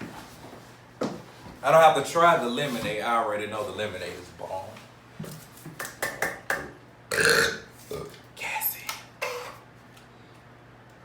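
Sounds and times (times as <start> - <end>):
man burping: 7.1 - 8.2.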